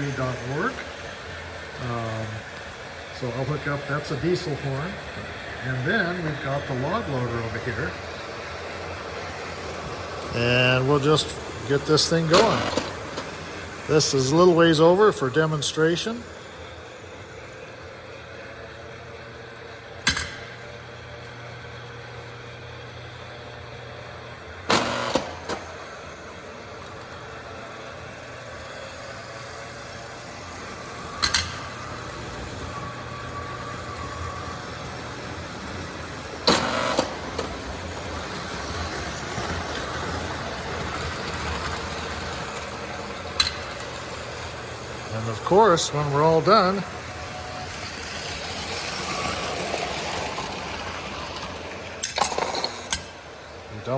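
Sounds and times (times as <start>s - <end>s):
electric motor hum: 0.0s - 53.9s
sharp mechanical clacks: 9.6s - 14.4s, 20.0s - 20.8s, 24.6s - 25.8s, 30.6s - 31.8s, 36.4s - 44.4s, 51.4s - 53.2s.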